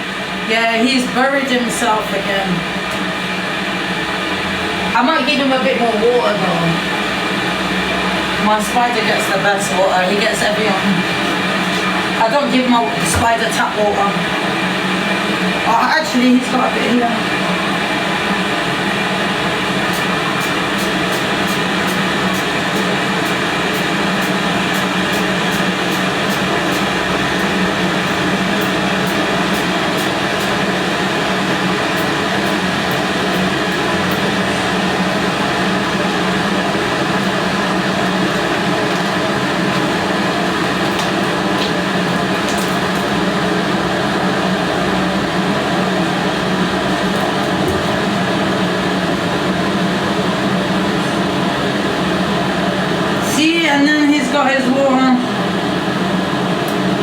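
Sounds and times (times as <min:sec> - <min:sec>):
loud mechanical whir: 0:17.3 - 0:50.0.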